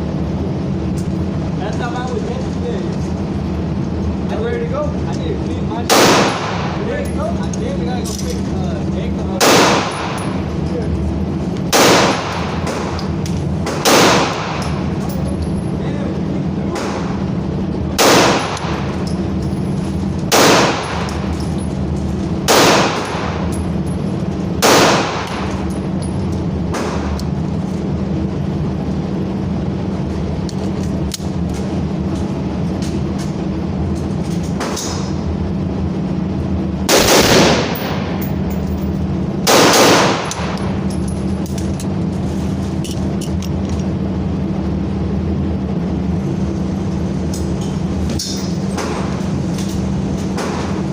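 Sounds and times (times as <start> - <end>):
low hum: 0.0 - 50.9
gunshots: 5.9 - 6.8, 9.4 - 10.2, 11.7 - 13.0, 13.6 - 14.8, 18.0 - 18.9, 20.3 - 21.2, 22.5 - 23.4, 24.6 - 25.5, 36.9 - 38.2, 39.4 - 40.6.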